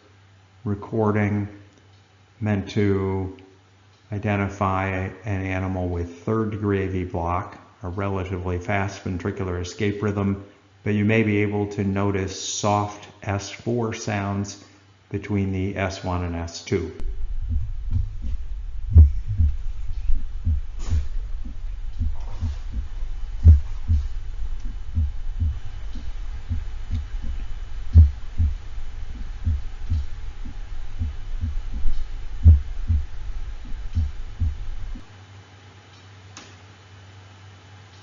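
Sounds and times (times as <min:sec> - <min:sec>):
heartbeat thuds: 0:17.0 - 0:35.1.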